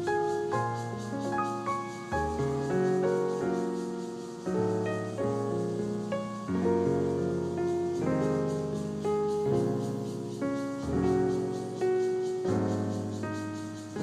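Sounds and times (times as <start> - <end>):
slow solo piano: 0.0 - 14.0.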